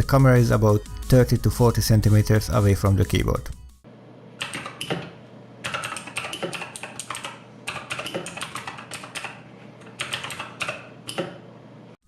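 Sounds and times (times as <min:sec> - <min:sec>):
mechanical keyboard typing clicks: 0:04.4 - 0:05.0, 0:05.6 - 0:11.3.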